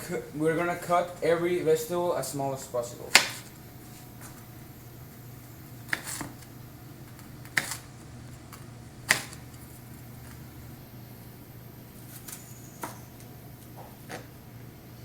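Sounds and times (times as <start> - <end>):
knife striking cutting board: 3.1 - 3.5.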